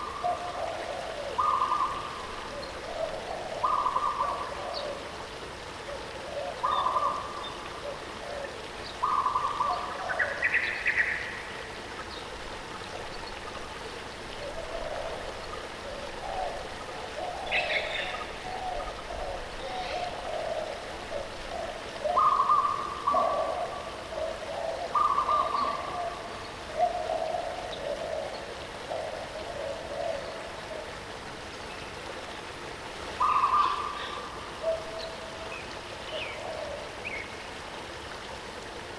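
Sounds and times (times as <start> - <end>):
waterfall running: 0.0 - 38.9
birds calling: 33.2 - 35.1.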